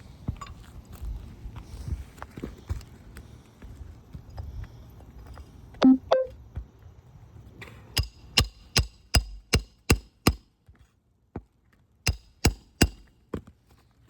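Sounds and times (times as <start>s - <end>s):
hammer striking metal tool: 8.0s - 10.4s, 12.1s - 13.0s.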